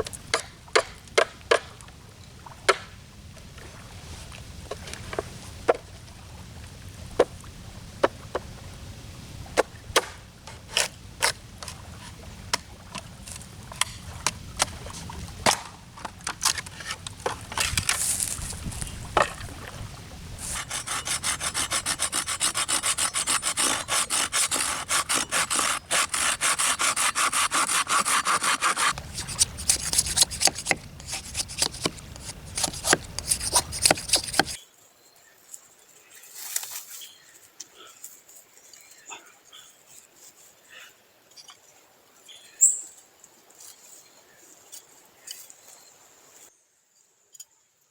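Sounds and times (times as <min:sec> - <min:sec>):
hand saw strokes: 0:10.0 - 0:12.2, 0:16.2 - 0:18.9, 0:20.4 - 0:34.6.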